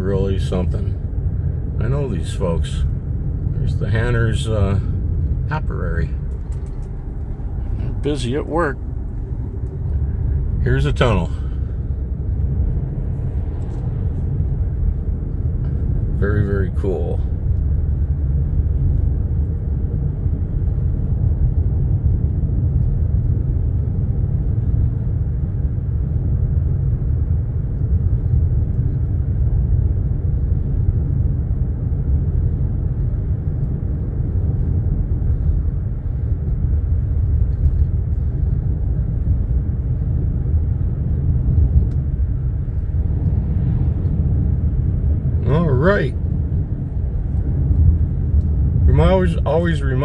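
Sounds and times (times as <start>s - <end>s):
car interior road rumble: 0.0s - 50.0s.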